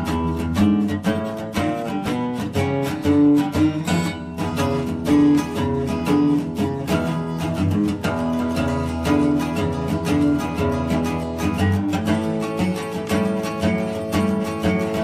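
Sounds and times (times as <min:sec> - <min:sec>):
acoustic guitar picking: 0:00.0 - 0:15.0.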